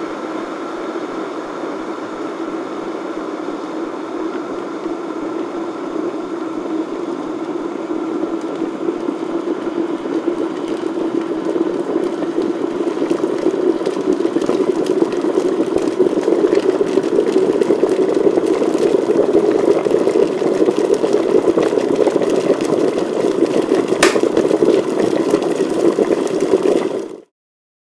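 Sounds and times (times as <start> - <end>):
electric kettle boiling: 0.0 - 27.3
kettle switch click: 24.0 - 24.3.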